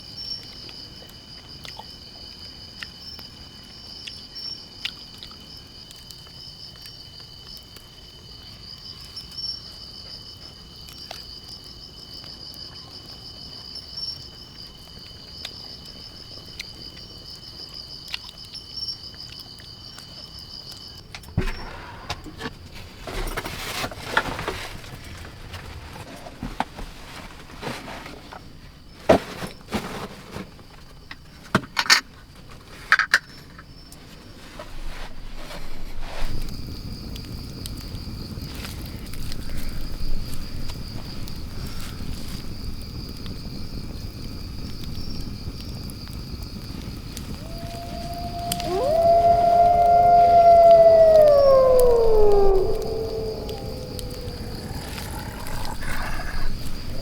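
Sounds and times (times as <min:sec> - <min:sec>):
insects chirring: 0:00.0 - 0:23.4, 0:36.2 - 0:57.0.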